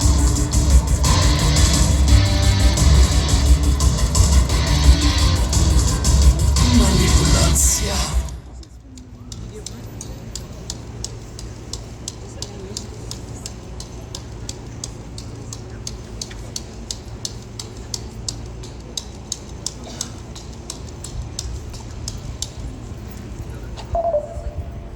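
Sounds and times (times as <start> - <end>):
low steady hum: 0.0 - 24.9
light sharp clicks: 8.6 - 24.0.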